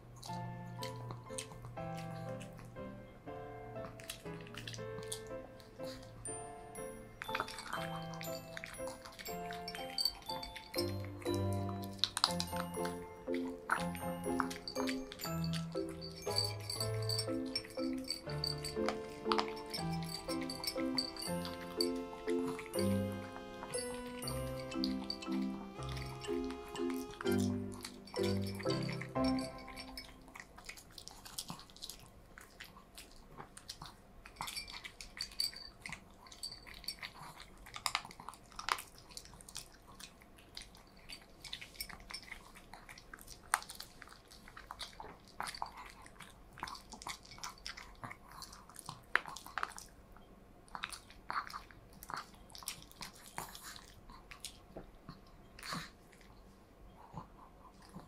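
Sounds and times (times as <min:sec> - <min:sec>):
dog crunching food: 0:00.0 - 0:02.8, 0:03.8 - 0:50.0, 0:50.6 - 0:56.4.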